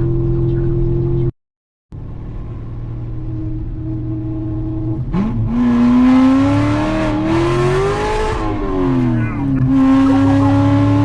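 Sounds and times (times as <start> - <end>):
car engine accelerating hard: 3.5 - 11.0.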